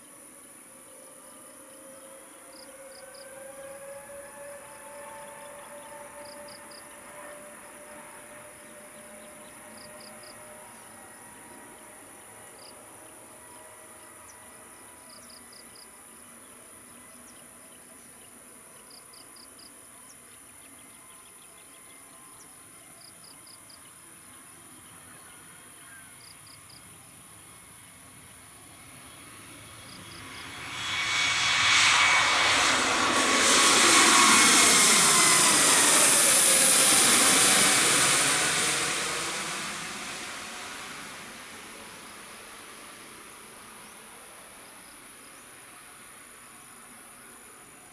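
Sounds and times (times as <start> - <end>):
jet airliner engines: 0.0 - 47.9.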